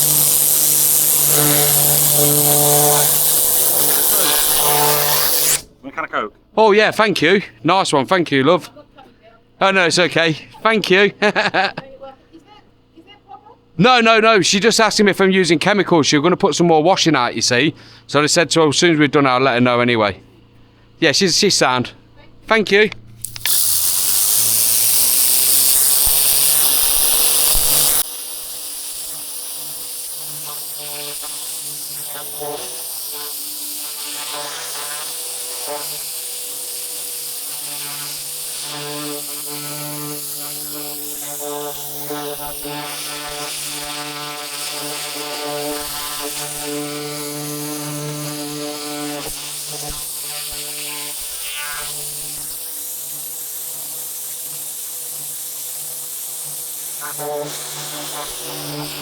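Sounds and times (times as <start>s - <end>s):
pressure washer spraying hiss: 0.0s - 5.7s, 23.2s - 59.0s
pressure washer buzzing hum: 0.0s - 5.8s, 23.0s - 59.0s.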